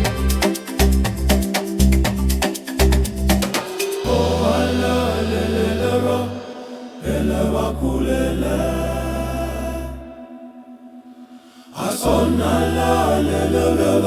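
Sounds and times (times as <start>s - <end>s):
choir chanting in harmony: 4.0s - 14.0s
deep held bass notes: 4.1s - 6.4s.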